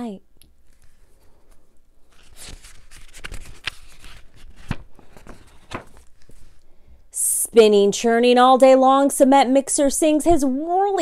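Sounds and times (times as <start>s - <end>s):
paper pages rustling: 0.6s - 6.7s.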